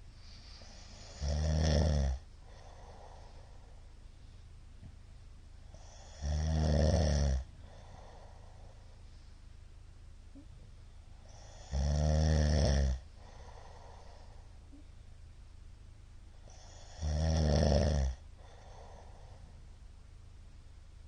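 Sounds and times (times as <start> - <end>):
faint breathing: 0.0 - 1.4, 2.4 - 5.0, 7.4 - 9.7, 13.0 - 15.2, 18.3 - 19.9
man snoring: 0.6 - 3.4, 5.7 - 8.8, 11.2 - 14.2, 16.4 - 19.3.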